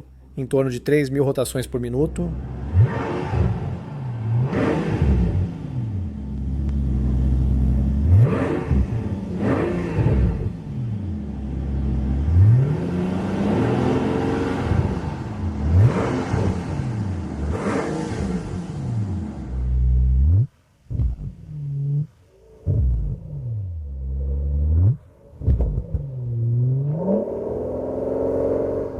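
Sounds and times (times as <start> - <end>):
car engine revving: 1.9 - 28.9.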